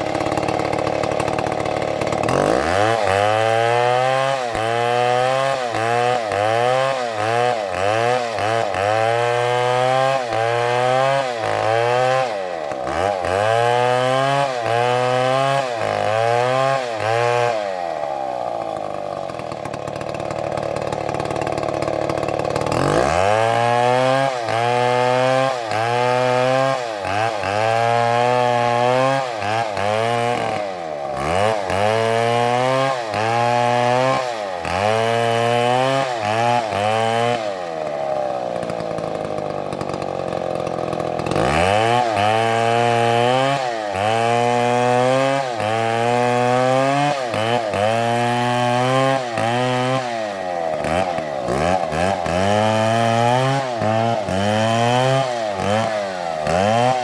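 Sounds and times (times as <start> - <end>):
chainsaw cutting wood: 0.0 - 57.0.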